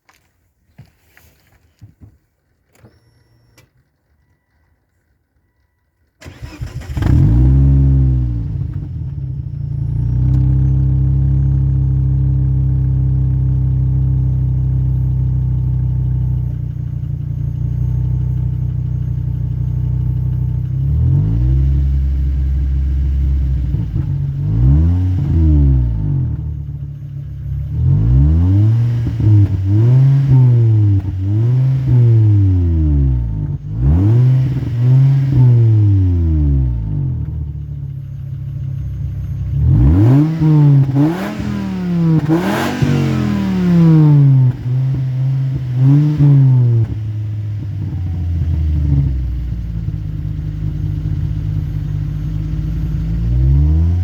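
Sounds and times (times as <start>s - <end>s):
car engine starting and idling: 2.4s - 54.0s
engine revving: 6.2s - 13.4s, 20.6s - 37.7s, 38.9s - 54.0s.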